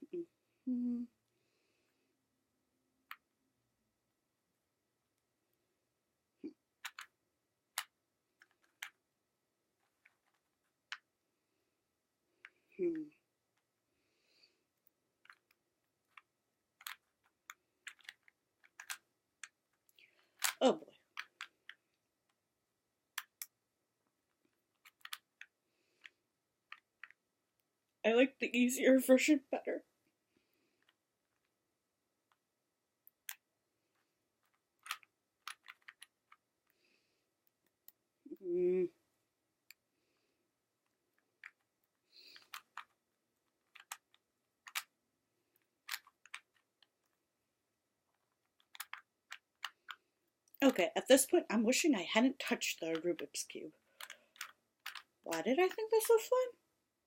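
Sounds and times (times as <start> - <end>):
puzzle cube plastic clicks: 3.0 - 3.4, 6.5 - 9.1, 9.7 - 11.2, 14.7 - 27.8, 30.8 - 38.1, 40.8 - 47.3, 48.0 - 50.8, 52.5 - 56.3.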